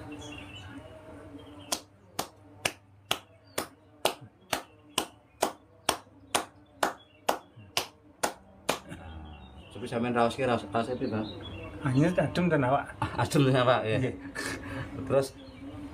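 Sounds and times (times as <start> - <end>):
hands slapping a body: 1.7 - 8.9.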